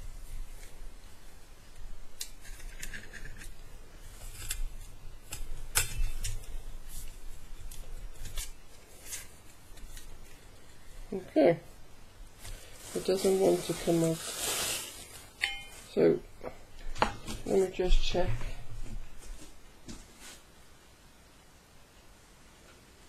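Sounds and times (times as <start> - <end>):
handling rustle: 12.3 - 16.0.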